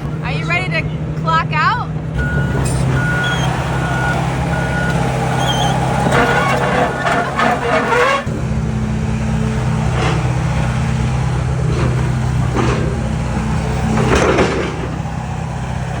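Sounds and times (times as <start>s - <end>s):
excavator engine running: 0.0s - 16.0s
short noises: 2.5s - 8.3s.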